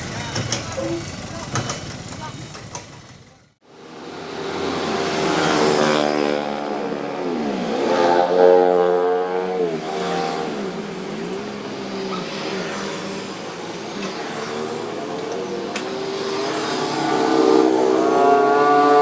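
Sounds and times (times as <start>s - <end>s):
heavy diesel engine running: 0.0s - 3.6s.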